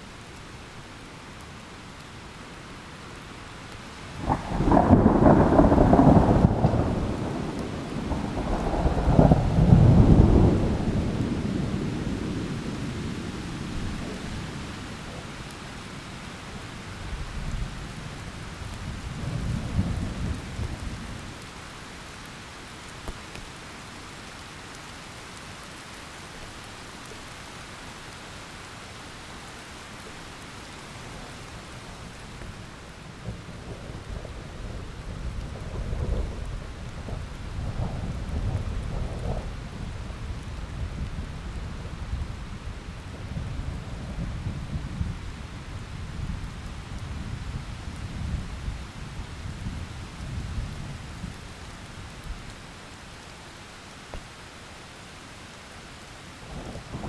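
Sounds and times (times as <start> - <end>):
steady rain: 0.0 - 57.0
rolling thunder rumbles: 4.2 - 15.3, 31.9 - 51.6.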